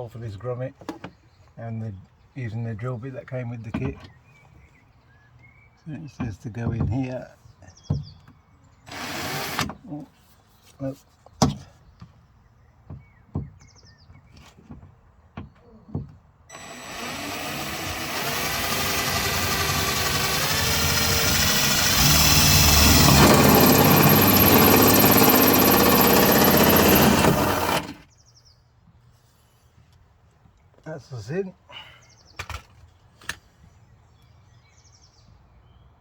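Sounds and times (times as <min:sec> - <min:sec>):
power drill boring through metal: 0:08.9 - 0:09.8, 0:16.5 - 0:28.0.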